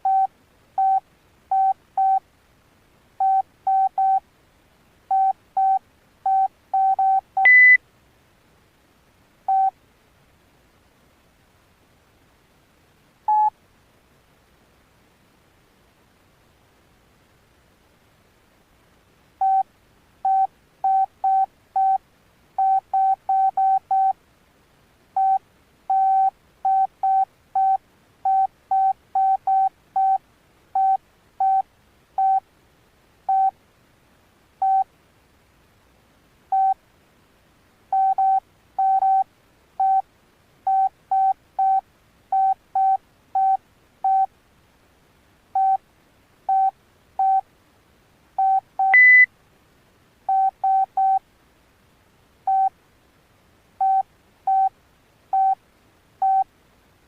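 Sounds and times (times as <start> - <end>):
phone keypad beeps: 0.0 - 2.2, 3.2 - 4.2, 5.1 - 7.8, 9.5 - 9.7, 13.3 - 13.5, 19.4 - 19.6, 20.3 - 22.0, 22.6 - 24.2, 25.2 - 30.2, 30.8 - 31.6, 32.2 - 32.4, 33.3 - 33.5, 34.6 - 34.8, 36.5 - 36.8, 38.0 - 39.2, 39.8 - 40.0, 40.7 - 44.3, 45.6 - 45.8, 46.5 - 47.4, 48.4 - 49.3, 50.3 - 51.2, 52.5 - 52.7, 53.8 - 54.7, 55.4 - 55.6, 56.2 - 56.5.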